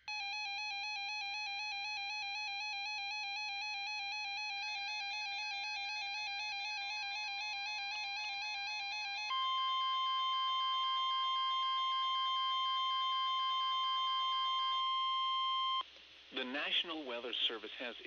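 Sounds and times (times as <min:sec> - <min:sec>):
faint steady tone: 0:00.0 - 0:18.0.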